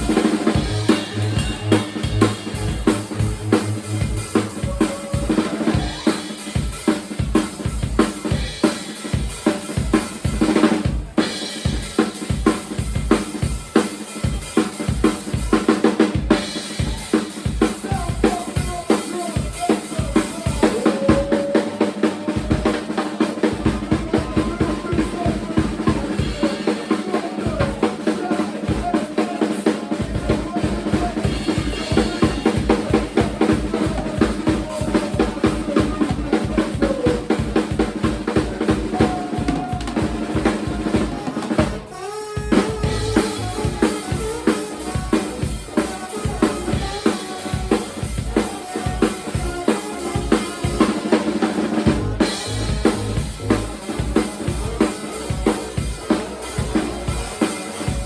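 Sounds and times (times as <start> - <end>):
live band playing: 0.0 - 58.0
kick drum and snare beat: 30.0 - 41.9.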